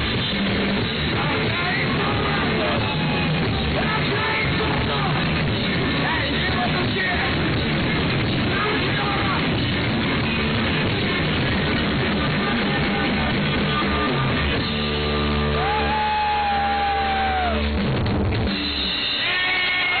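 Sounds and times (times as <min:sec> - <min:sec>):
live rock band playing: 0:00.0 - 0:20.0.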